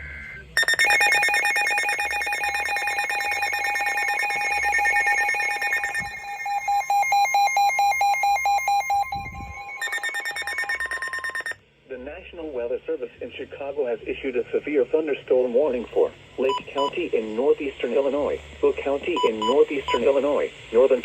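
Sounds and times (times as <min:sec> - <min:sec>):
electronic alert alarms beeping: 0:00.0 - 0:11.6, 0:19.2 - 0:20.2
steady tone: 0:00.6 - 0:11.6.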